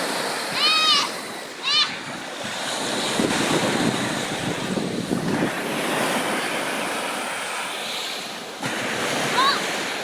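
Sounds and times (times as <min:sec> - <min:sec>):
ocean waves breaking on shore: 0:00.0 - 0:10.0.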